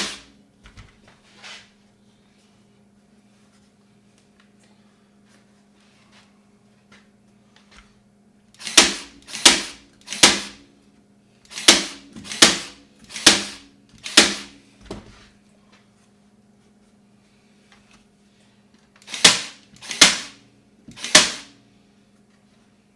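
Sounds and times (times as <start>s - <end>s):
staple gun firing: 8.6s - 10.6s, 11.5s - 14.5s, 19.0s - 20.4s, 21.0s - 21.5s.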